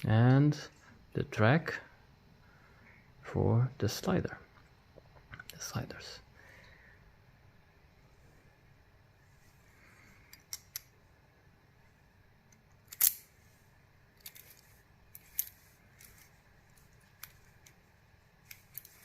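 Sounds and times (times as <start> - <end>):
lock and key clicking: 12.8 - 13.2.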